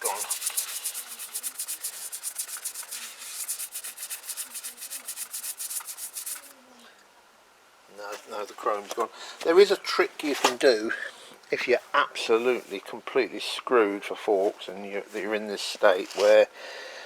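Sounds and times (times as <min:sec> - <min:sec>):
abrasive rubbing on metal tube: 0:00.0 - 0:06.5.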